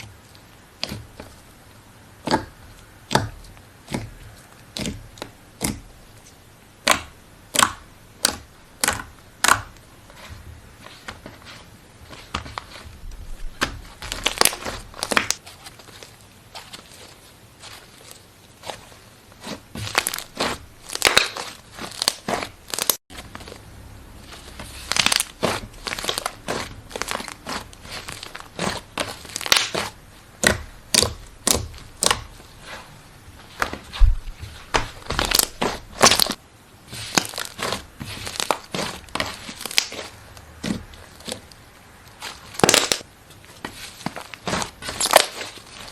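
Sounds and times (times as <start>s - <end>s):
slime crackling and popping: 13.6s - 16.1s, 19.4s - 23.6s, 24.6s - 32.5s, 34.8s - 41.6s, 42.2s - 43.1s, 44.1s - 45.9s.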